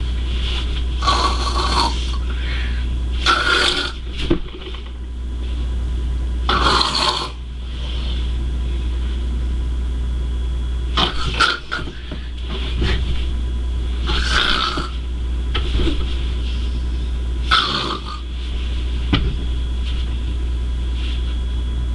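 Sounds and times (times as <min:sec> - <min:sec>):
steady low hum: 0:00.0 - 0:21.9
child snoring: 0:01.0 - 0:02.3, 0:03.2 - 0:04.0, 0:06.5 - 0:07.4, 0:11.0 - 0:12.0, 0:14.1 - 0:15.0, 0:17.5 - 0:18.2.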